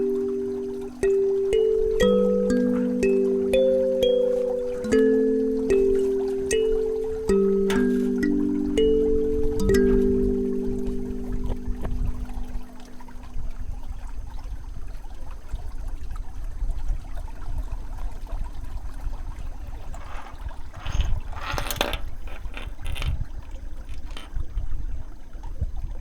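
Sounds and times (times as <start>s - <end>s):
kalimba note: 0.0s - 13.2s
stream water rushing: 0.0s - 13.6s.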